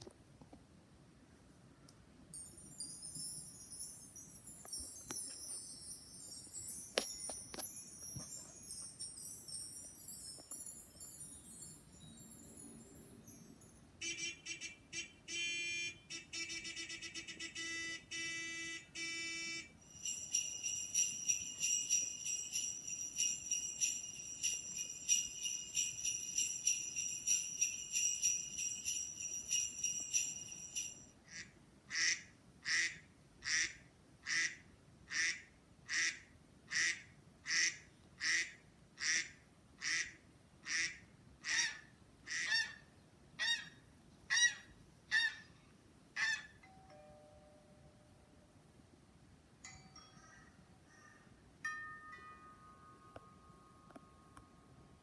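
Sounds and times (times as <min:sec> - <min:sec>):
high continuous jingling: 0:02.3 - 0:14.0, 0:19.7 - 0:31.2, 0:49.6 - 0:55.0
rhythmic ringing tones: 0:02.4 - 0:13.9, 0:19.8 - 0:31.1
squeaky toy squeaking: 0:40.7 - 0:45.5, 0:46.2 - 0:46.7.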